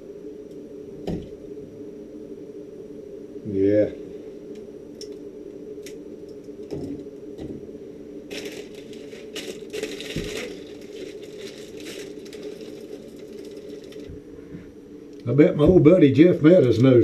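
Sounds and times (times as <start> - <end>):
steady hum: 0.0 - 17.0
packaging crinkling and crushing: 8.3 - 14.2.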